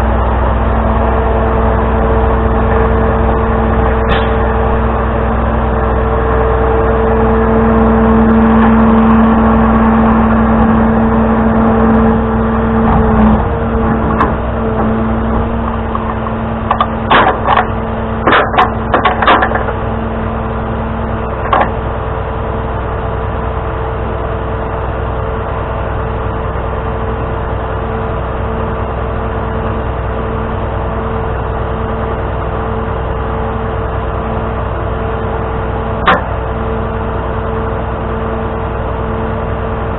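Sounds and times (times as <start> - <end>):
truck engine whining: 0.0 - 39.9
metal clicks and clanks: 15.6 - 19.8.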